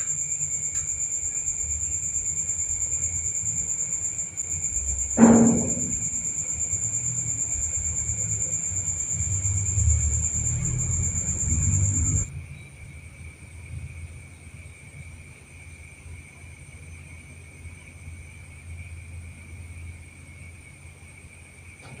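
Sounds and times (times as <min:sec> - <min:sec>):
crickets trilling: 0:00.0 - 0:22.0
loud thump with low ringing tone: 0:05.1 - 0:06.7.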